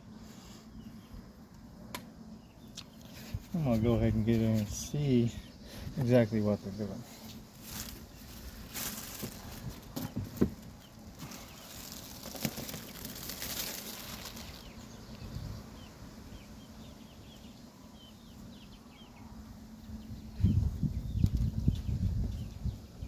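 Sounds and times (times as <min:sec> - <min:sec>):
honeybees humming: 0:00.0 - 0:23.0
wooden hive parts scraping: 0:02.8 - 0:15.0.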